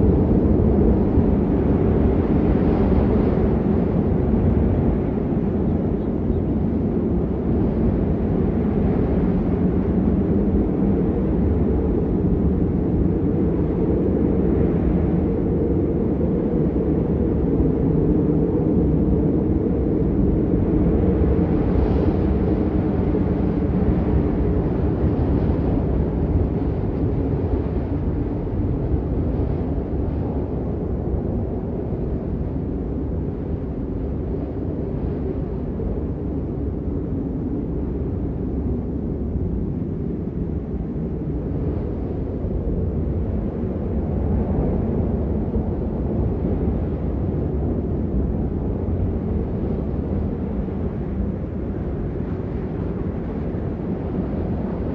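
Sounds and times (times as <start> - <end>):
howling blizzard wind: 0.0 - 54.9
wind buffeting microphone: 0.0 - 54.9.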